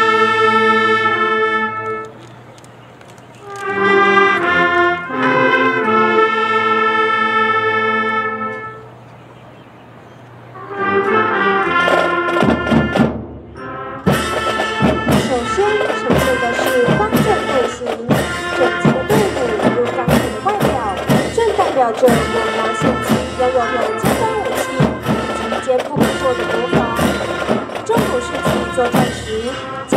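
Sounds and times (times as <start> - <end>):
brass chords: 0.0 - 2.2, 3.4 - 29.9
sharp percussive strikes: 11.7 - 29.6.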